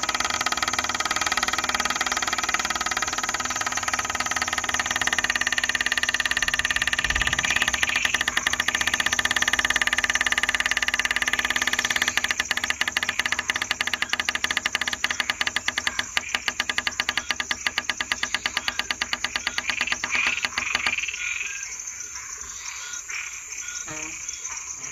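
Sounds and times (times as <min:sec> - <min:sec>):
night animals pulsing trill: 0:00.0 - 0:24.9.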